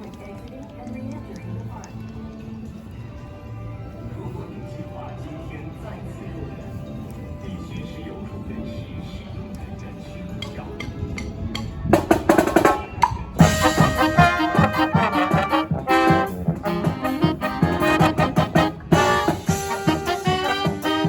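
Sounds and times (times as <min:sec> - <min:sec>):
drum strokes: 0:11.5 - 0:21.0
marching brass band playing: 0:13.4 - 0:21.0.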